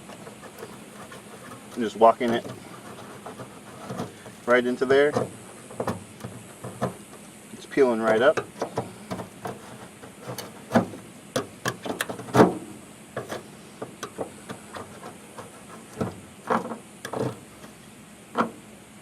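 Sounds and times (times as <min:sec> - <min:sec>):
hand scraper scraping: 0:00.0 - 0:17.8.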